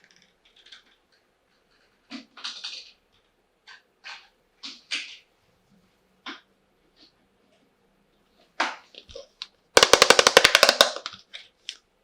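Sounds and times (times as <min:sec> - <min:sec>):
plastic toy pieces clicking: 0:09.8 - 0:11.2.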